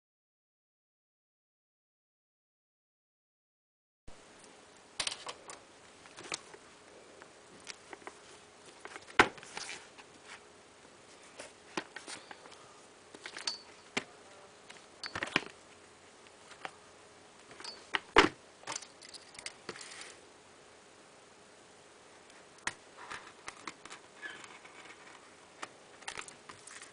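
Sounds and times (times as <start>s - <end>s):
packaging clicks and rustles: 22.6s - 26.9s.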